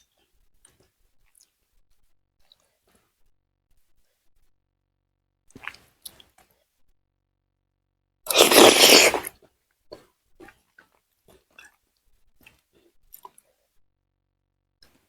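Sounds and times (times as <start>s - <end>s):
mouth clicks: 8.3s - 9.3s
noisy mouthful sound: 8.3s - 9.3s
soft chewing: 8.3s - 9.3s.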